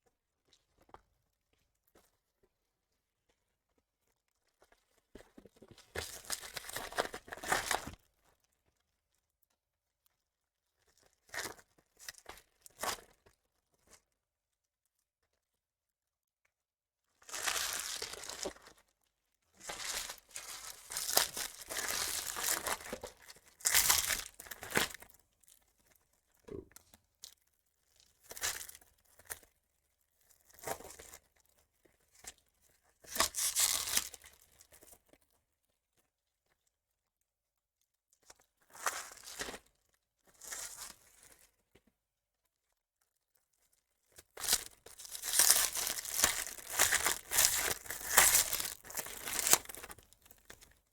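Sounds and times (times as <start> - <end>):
wrappers tearing and crinkling: 17.3 - 18.6, 19.6 - 25.0, 33.1 - 34.4, 44.4 - 50.1.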